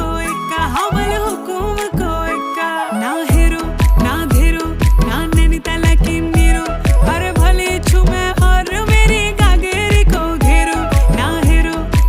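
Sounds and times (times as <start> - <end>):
song with pulsing bass beat: 3.3 - 12.0.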